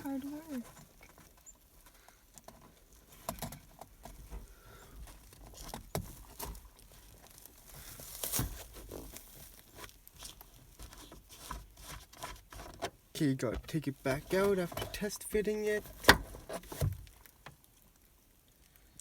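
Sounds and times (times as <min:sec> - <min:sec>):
hands working with wire: 0:00.0 - 0:19.0.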